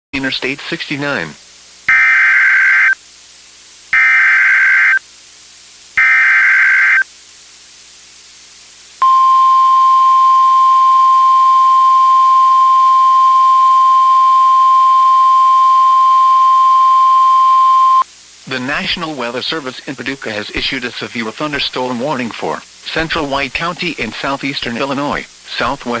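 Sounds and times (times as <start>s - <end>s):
harsh data tone bursts: 1.9s - 3.0s, 3.9s - 5.0s, 6.0s - 7.1s, 9.0s - 18.9s
steady warning alarm tone: 1.9s - 3.0s, 4.0s - 5.0s, 6.0s - 7.0s, 9.0s - 18.0s.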